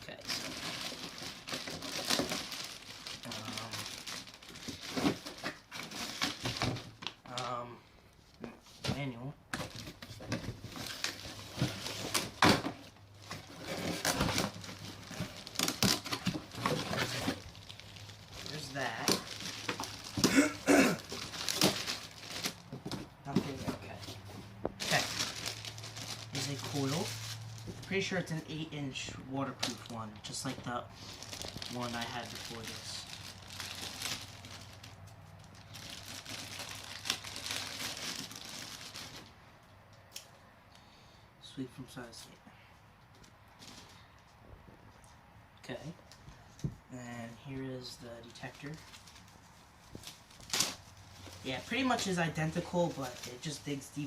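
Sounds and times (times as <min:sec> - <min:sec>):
packaging rustling: 0:00.1 - 0:07.4, 0:08.6 - 0:28.7, 0:29.5 - 0:39.4, 0:48.2 - 0:54.0.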